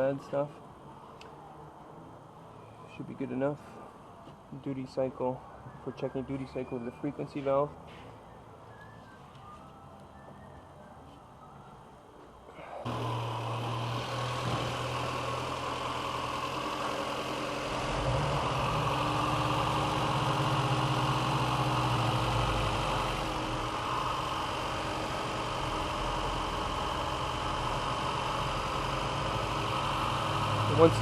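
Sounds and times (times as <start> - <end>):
car engine idling: 12.6 - 31.0.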